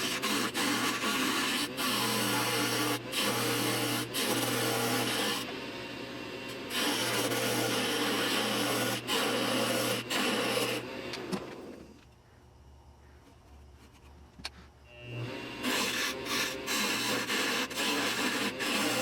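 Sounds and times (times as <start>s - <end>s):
tool scraping spinning wood: 0.0s - 5.6s, 6.4s - 12.0s, 13.7s - 19.0s
lathe motor humming: 0.0s - 11.8s, 14.9s - 19.0s.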